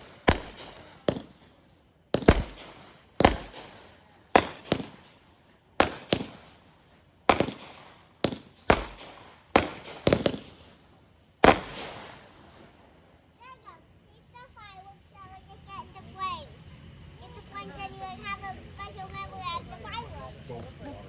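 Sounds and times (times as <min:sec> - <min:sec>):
fireworks banging with echo: 0:00.0 - 0:13.1.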